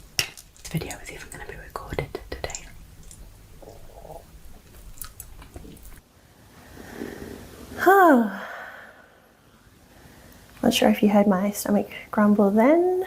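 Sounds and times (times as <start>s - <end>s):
stomach growling: 1.0s - 6.0s.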